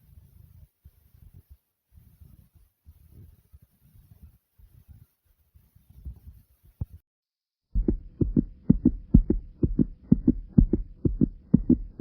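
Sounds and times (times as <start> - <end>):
faint steady hum: 7.8 - 12.0
fast heartbeat thumps: 7.8 - 12.0.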